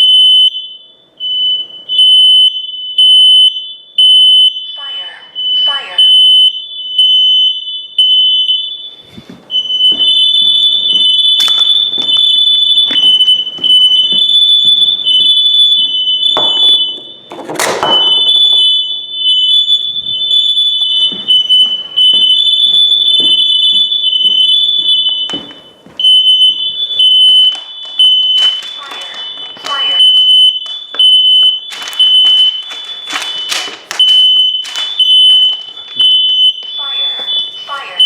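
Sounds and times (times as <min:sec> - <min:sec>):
smoke alarm high-pitched beeping: 0:00.0 - 0:38.0.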